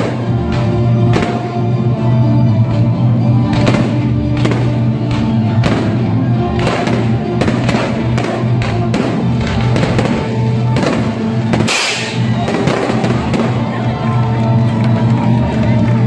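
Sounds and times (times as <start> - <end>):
background music with steady beat: 0.0 - 16.0
short loud hiss: 11.7 - 12.3.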